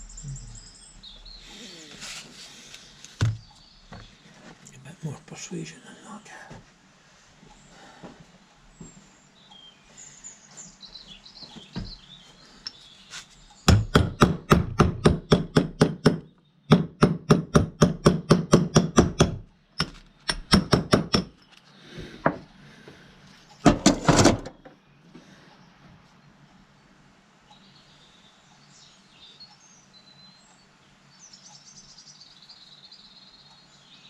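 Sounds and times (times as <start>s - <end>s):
faint birdsong: 0.0s - 16.8s, 19.0s - 34.0s
rapid hammer taps: 13.7s - 21.4s.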